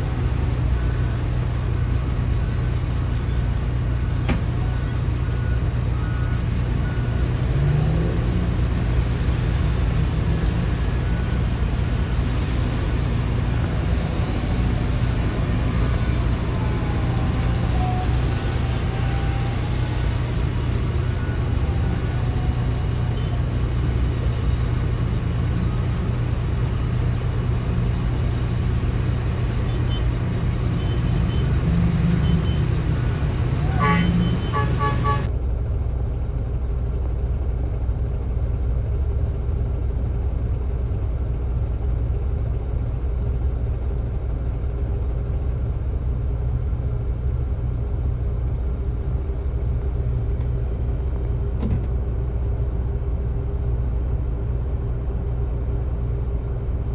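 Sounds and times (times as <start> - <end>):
diesel engines rumbling: 0.0 - 56.9
short horn tone: 33.6 - 35.3.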